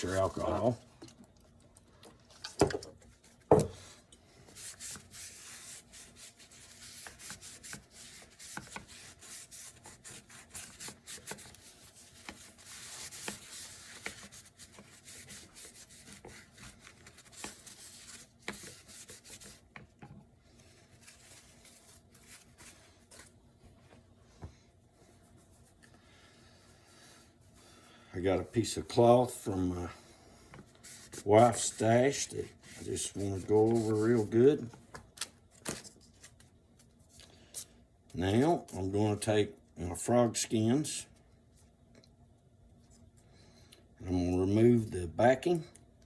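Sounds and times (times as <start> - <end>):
hand scrubbing plastic: 0.0 - 1.0, 4.5 - 19.9, 30.7 - 34.5.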